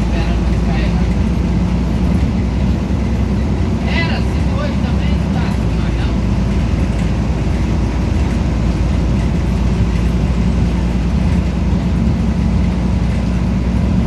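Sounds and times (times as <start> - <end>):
bus diesel engine droning: 0.0 - 14.0.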